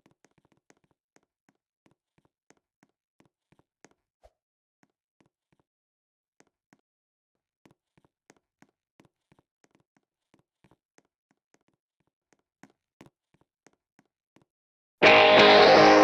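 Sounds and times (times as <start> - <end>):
electric guitar music: 15.0 - 16.0.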